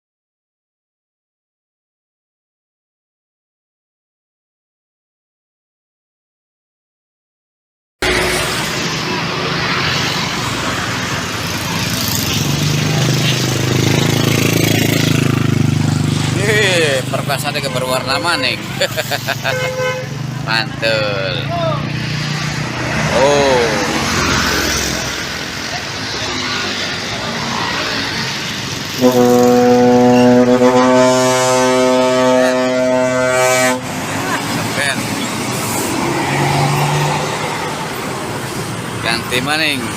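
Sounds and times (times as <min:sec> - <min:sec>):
bus engine drone: 0:08.0 - 0:39.9
traffic noise: 0:08.0 - 0:39.9
bus air horn blast: 0:19.4 - 0:20.2, 0:29.0 - 0:34.1.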